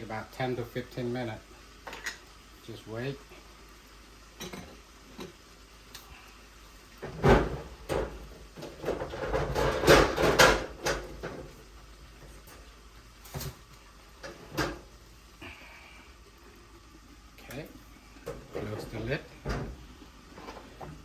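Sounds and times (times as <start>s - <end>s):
kitchen knocks and bumps: 7.0s - 11.5s, 18.3s - 19.8s.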